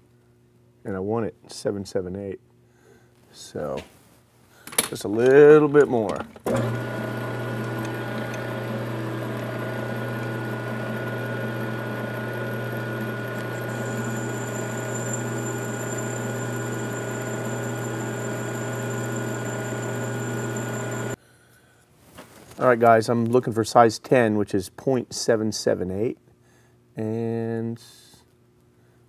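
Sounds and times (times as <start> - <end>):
lathe motor hum: 6.5 - 21.2.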